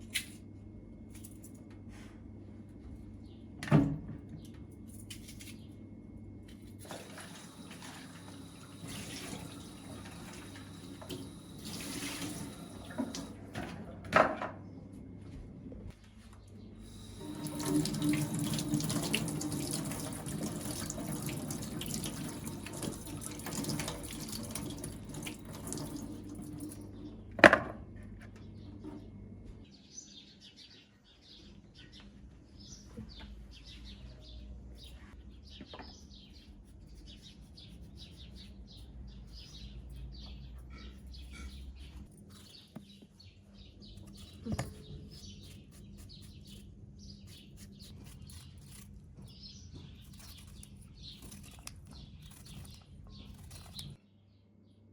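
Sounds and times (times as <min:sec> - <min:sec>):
water running: 0:06.8 - 0:13.4, 0:16.9 - 0:27.0
small birds chirping: 0:28.4 - 0:54.8.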